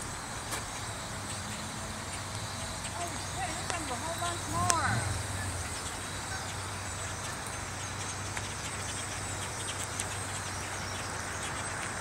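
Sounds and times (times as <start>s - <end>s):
flock of birds chirping: 0.0s - 12.0s
steady hiss: 0.0s - 12.0s
steady low hum: 0.0s - 12.0s.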